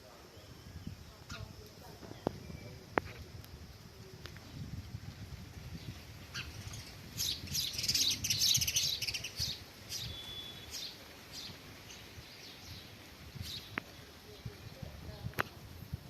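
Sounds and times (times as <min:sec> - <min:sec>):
sparrows chirping: 0:00.0 - 0:02.8, 0:05.7 - 0:15.3.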